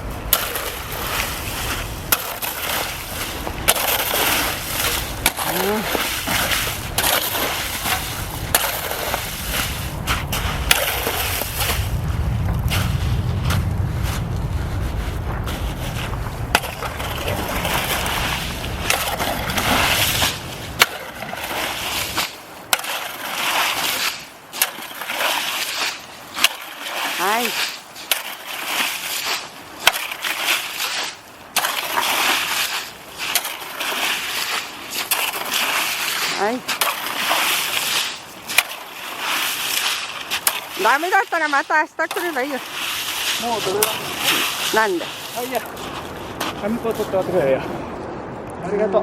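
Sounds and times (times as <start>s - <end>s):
tools scraping wet sand and gravel: 0.0s - 47.6s
low rumble: 6.4s - 20.9s.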